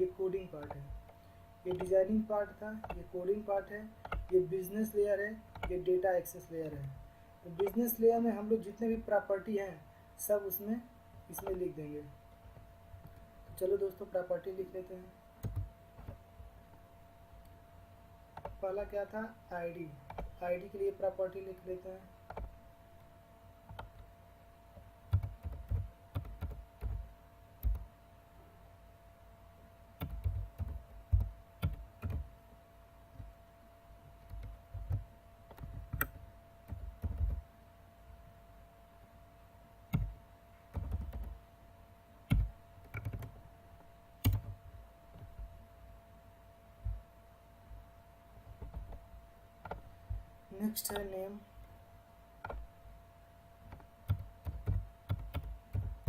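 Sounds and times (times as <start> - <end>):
faint steady hum: 0.0 - 56.0
typing on computer keyboard: 4.0 - 4.3, 25.1 - 27.0, 27.6 - 27.8, 30.0 - 32.2, 34.2 - 37.4, 40.7 - 41.4, 42.3 - 43.3, 44.2 - 44.6, 53.7 - 56.0.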